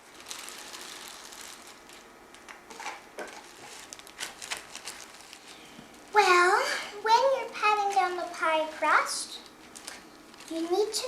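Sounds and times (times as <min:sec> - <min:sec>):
cereal crackling pressed by hand: 0:00.0 - 0:06.1, 0:09.4 - 0:11.0.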